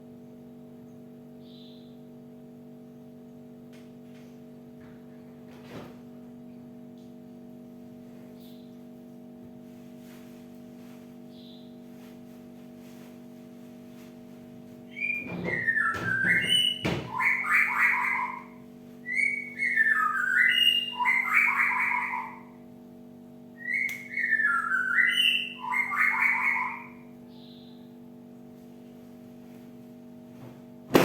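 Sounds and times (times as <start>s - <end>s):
steady low hum: 0.0s - 16.0s, 16.6s - 31.0s
tit calling whistled notes: 14.9s - 22.5s, 23.6s - 27.0s.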